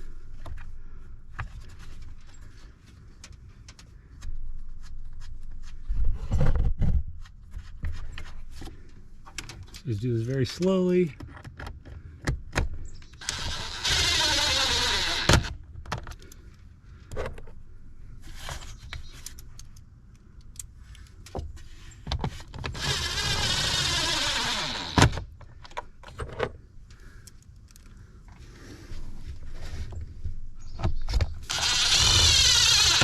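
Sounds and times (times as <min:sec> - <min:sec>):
impact driver running: 0:13.2 - 0:15.5, 0:31.5 - 0:33.0.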